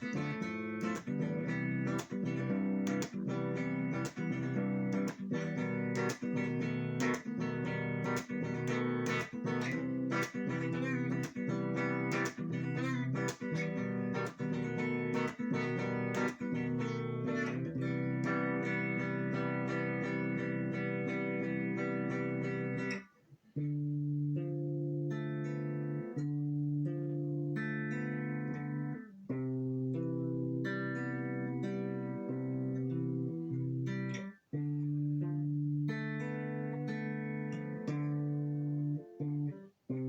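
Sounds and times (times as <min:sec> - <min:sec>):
guitar strummed in chords: 0:00.0 - 0:40.0.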